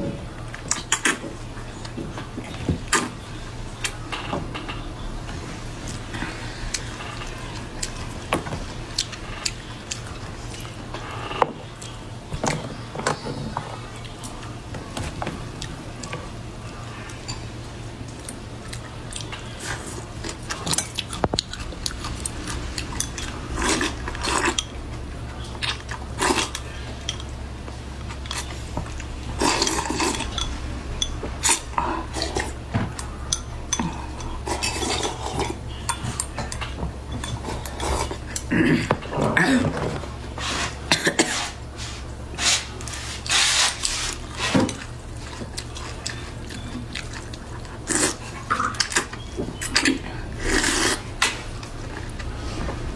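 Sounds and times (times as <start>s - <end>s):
eating sounds: 0.0s - 52.9s
steady low hum: 0.0s - 52.9s
utensils clinking against dish: 16.0s - 52.1s.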